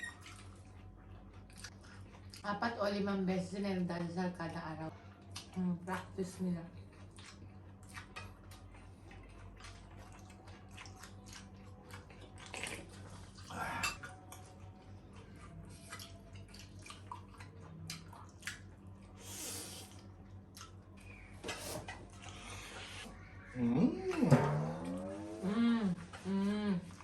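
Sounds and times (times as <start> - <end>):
chewing and mouth clicks: 0.0 - 2.5, 5.1 - 5.6, 6.8 - 19.1, 19.7 - 21.2
low steady hum: 0.0 - 27.0.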